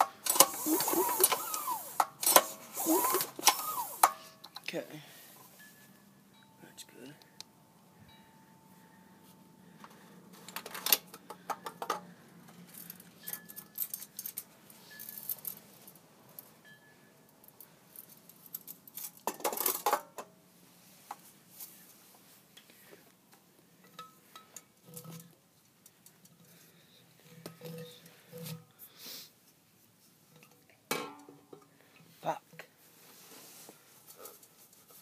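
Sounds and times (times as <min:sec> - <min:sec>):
metal parts and tools clinking: 0:00.0 - 0:04.7, 0:10.4 - 0:16.5, 0:23.8 - 0:25.4, 0:27.3 - 0:28.6.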